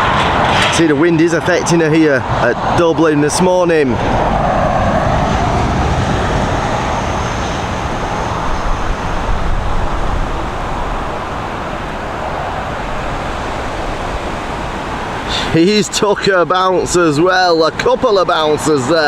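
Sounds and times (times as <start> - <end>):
faint high whine: 0.0 - 19.0
strong wind buffeting microphone: 0.0 - 19.0.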